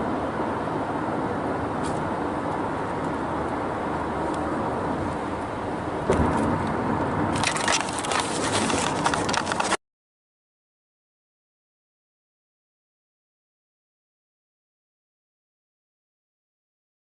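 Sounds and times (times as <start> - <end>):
car road and engine noise: 0.0 - 9.8
thump: 6.1 - 6.5.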